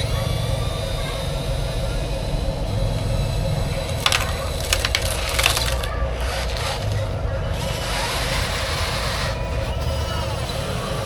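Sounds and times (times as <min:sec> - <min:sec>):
toy electric motors whining: 0:00.0 - 0:11.0
clicking rattles: 0:03.7 - 0:08.6.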